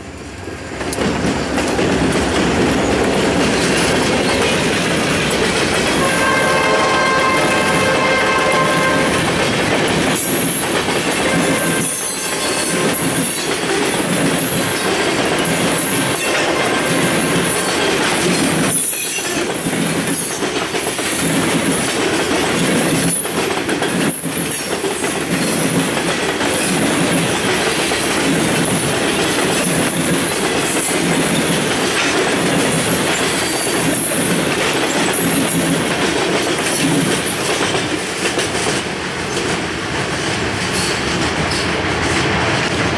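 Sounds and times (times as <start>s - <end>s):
train wheels clacking: 0.6s - 42.9s
wheel squeal on rail: 11.2s - 21.3s.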